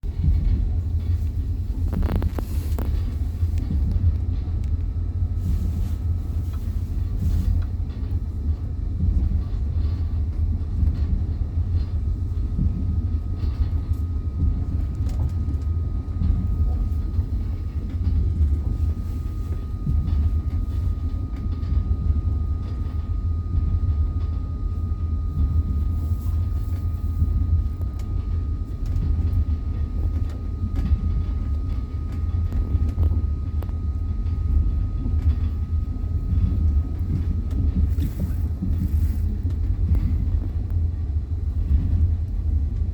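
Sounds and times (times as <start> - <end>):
train wheels rumbling on rails: 0.0 - 42.9
faint high whine: 12.7 - 40.7.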